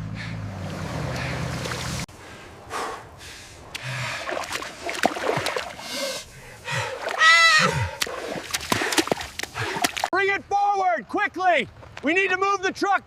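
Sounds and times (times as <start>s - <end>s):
mud and water sloshing: 0.5s - 2.1s, 3.6s - 10.1s
knocks and splashes: 0.6s - 2.1s, 3.7s - 5.8s, 6.7s - 10.1s.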